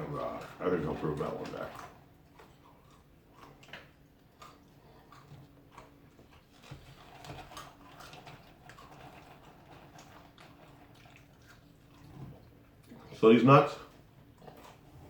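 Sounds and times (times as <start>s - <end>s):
person chewing peanuts: 1.9s - 13.0s.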